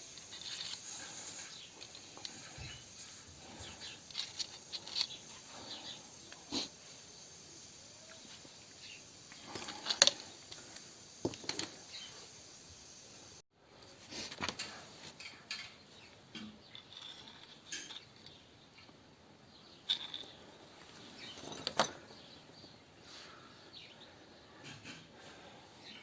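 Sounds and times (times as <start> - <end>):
small hard parts clicking: 0.0 - 6.6, 9.2 - 12.0, 14.2 - 19.0.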